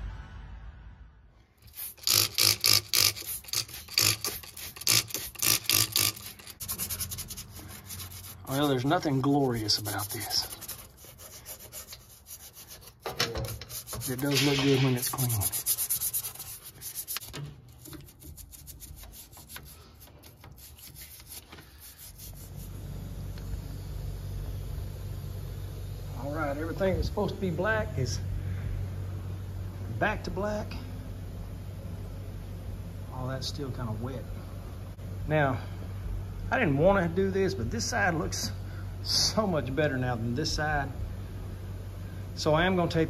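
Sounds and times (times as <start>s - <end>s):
steady low hum: 0.0s - 43.0s
hand scrubbing strokes: 1.7s - 22.8s.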